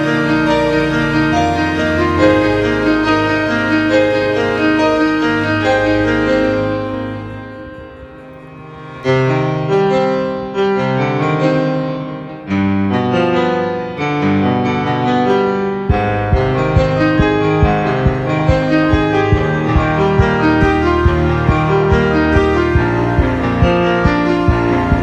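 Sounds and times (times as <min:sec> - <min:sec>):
slow piano melody: 0:00.0 - 0:25.0
steady low beat: 0:15.9 - 0:25.0.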